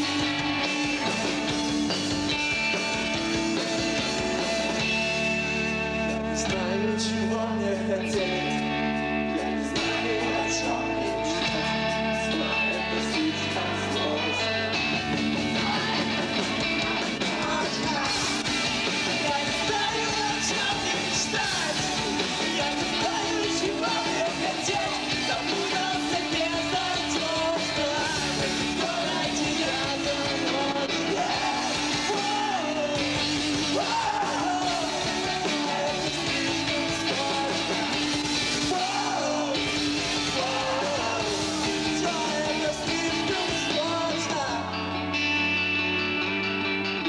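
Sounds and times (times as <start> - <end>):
rock band playing live: 0.0 - 47.0
person singing and shouting: 9.4 - 44.9.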